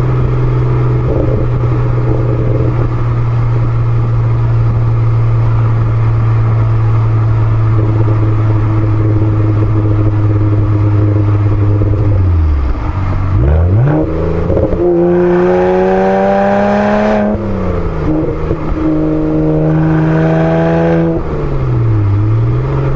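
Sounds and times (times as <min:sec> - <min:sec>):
car engine revving: 0:00.0 - 0:22.9.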